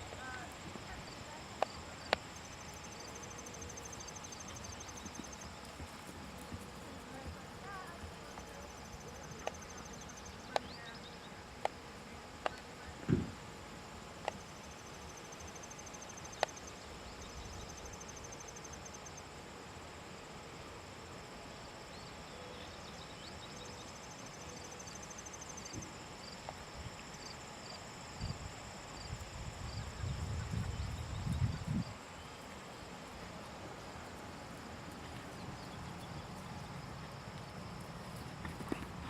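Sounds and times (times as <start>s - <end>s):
insects chirping in high trills: 0.0s - 12.1s, 13.9s - 39.0s.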